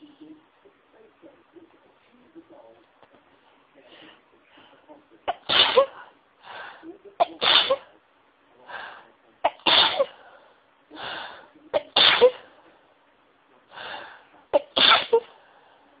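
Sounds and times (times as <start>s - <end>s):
person sneezing: 5.3s - 6.0s, 7.2s - 7.9s, 9.5s - 10.2s, 11.8s - 12.5s, 14.6s - 15.3s.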